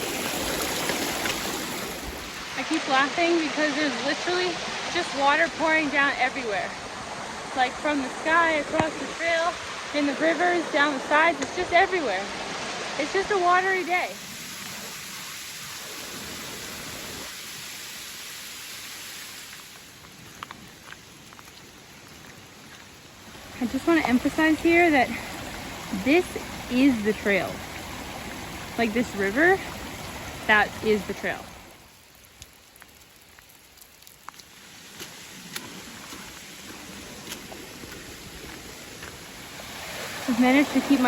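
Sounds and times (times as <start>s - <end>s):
heavy rain: 0.0s - 41.0s
water running down a trail: 0.0s - 41.0s
close raindrops ticking: 19.6s - 24.4s, 25.1s - 39.3s
rain drop taps: 32.3s - 36.3s.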